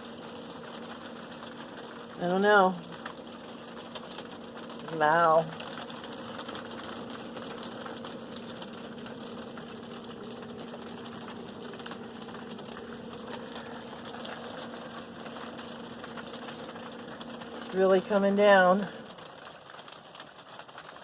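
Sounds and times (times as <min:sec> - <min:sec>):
steady low hum: 0:00.0 - 0:20.7.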